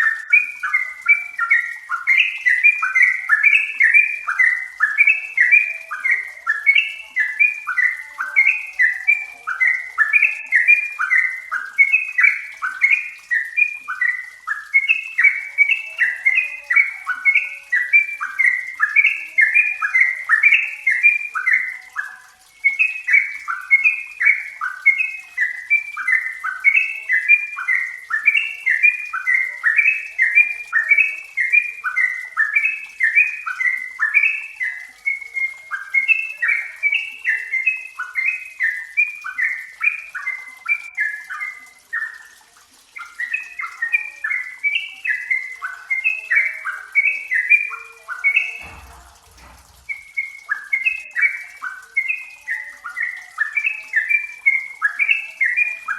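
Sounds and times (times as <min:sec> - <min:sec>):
bird singing bubbly chatter: 0:00.0 - 0:55.9
low thump: 0:48.7 - 0:50.1.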